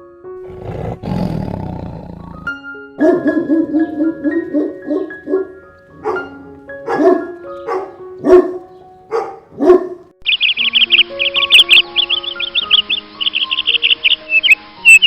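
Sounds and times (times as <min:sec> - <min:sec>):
background music: 0:00.0 - 0:15.0
dog barking: 0:03.0 - 0:10.1
high-pitched chirping: 0:10.2 - 0:15.0.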